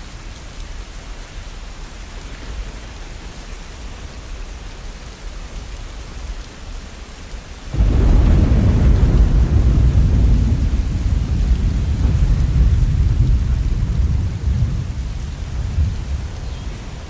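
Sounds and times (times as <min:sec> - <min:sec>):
steady rain: 0:00.0 - 0:17.0
rolling thunder: 0:07.7 - 0:17.0.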